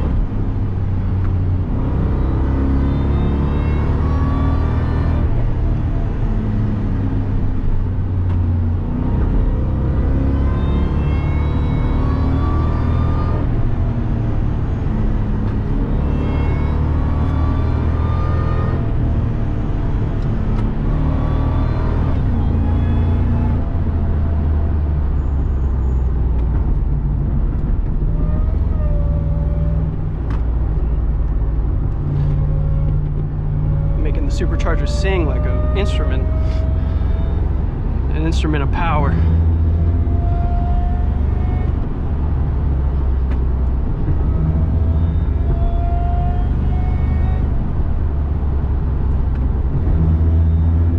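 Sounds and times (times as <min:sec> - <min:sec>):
supercharger whining: 0:01.0 - 0:50.9
truck engine at full throttle: 0:29.8 - 0:50.9.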